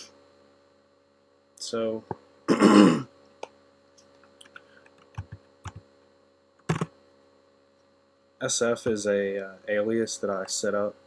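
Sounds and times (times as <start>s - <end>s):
computer keyboard keystrokes: 5.1s - 5.8s, 6.7s - 6.9s.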